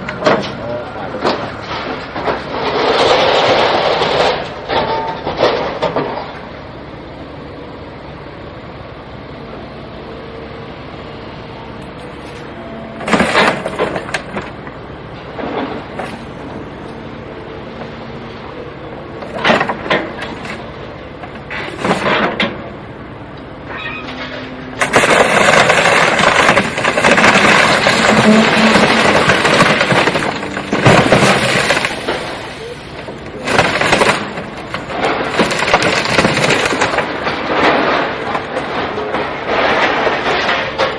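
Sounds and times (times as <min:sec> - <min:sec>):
vehicle running hum: 0:00.0 - 0:40.9
loud rough noise: 0:23.6 - 0:40.9.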